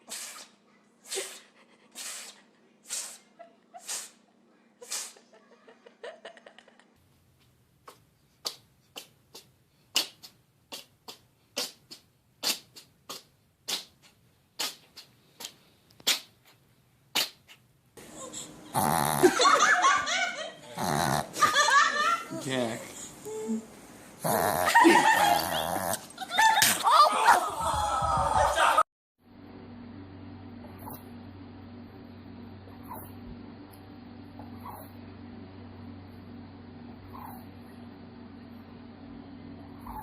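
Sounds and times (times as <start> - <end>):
animal sneezing: 0.0 - 4.2, 4.8 - 5.3, 7.9 - 17.6.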